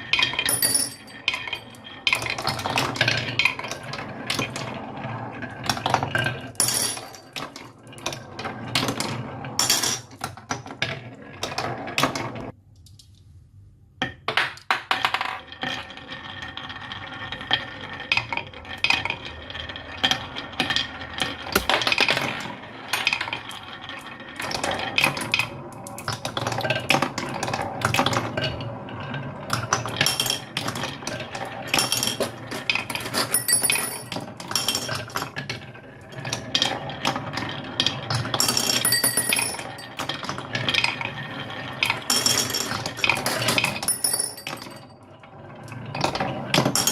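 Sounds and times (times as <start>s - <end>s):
toy pieces clattering down track: 29.5s - 45.0s.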